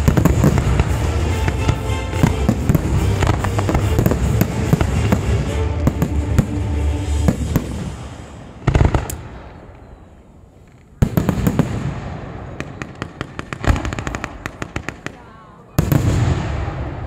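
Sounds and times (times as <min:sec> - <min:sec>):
firework shells booming: 0:00.0 - 0:09.9
firework crackles: 0:00.0 - 0:17.0.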